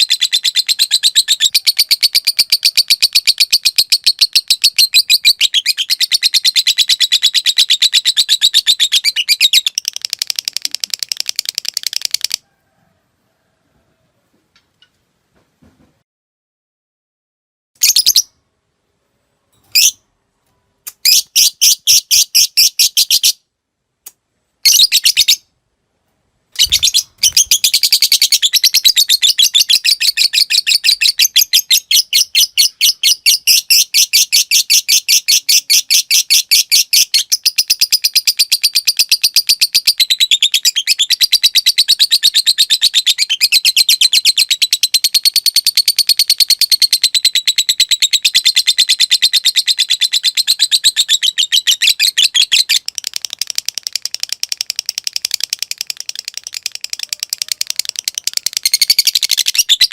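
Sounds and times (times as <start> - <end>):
lovebird fast chattering trill: 0.0 - 12.4, 26.6 - 35.9
lovebird ticking chirps: 26.6 - 35.3.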